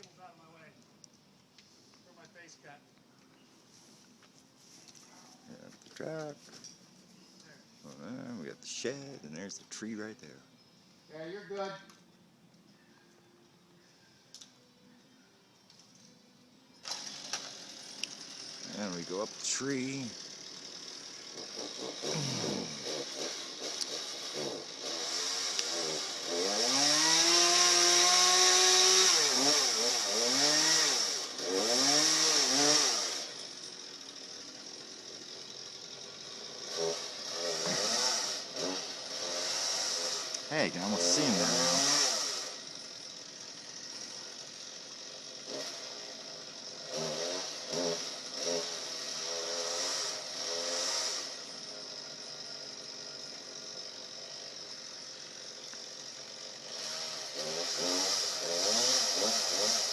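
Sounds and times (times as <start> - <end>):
chainsaw revving: 16.8 - 59.9.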